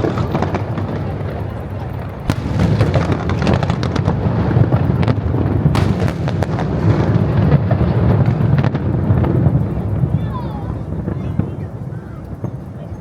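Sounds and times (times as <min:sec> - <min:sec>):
fireworks bangs and crackling: 0:00.0 - 0:13.0
sharp firework crack: 0:02.2 - 0:09.6
low rumble: 0:02.2 - 0:10.1.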